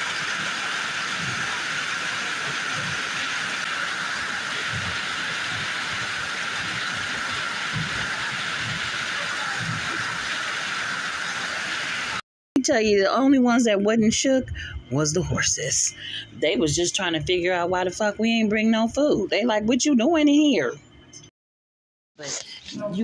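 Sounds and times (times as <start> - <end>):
steady hissing rushing noise: 0.0 - 12.2.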